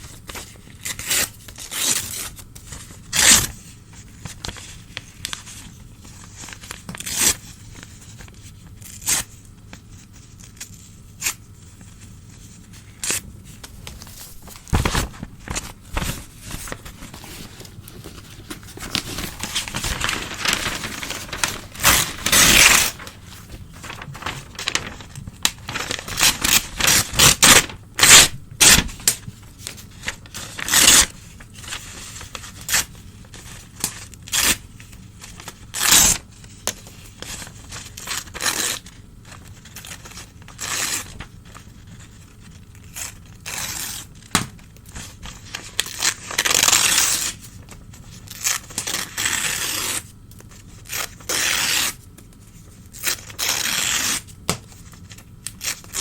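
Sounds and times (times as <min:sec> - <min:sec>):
newspaper tearing: 0:00.8 - 0:03.6, 0:12.4 - 0:36.2, 0:37.2 - 0:41.6, 0:42.8 - 0:47.5, 0:48.2 - 0:52.0, 0:53.0 - 0:56.0
paper rustling: 0:01.4 - 0:38.7.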